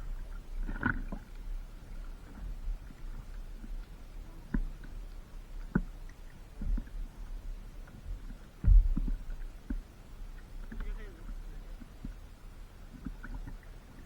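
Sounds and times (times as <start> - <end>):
wind and water on microphone: 0.0 - 14.0
dull thumps and knocks: 8.6 - 9.8.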